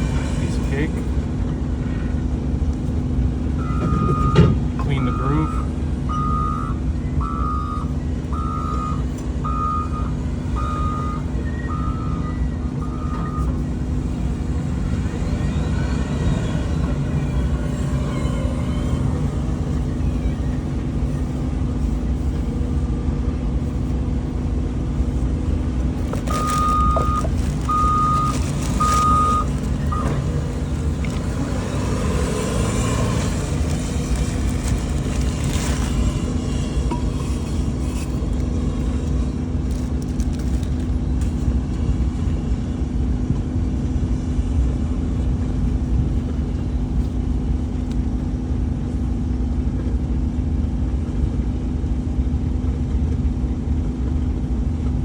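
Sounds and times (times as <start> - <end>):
heavy equipment engine rumble: 0.0 - 55.0
backup alarm beeping: 3.6 - 13.6, 26.3 - 30.2.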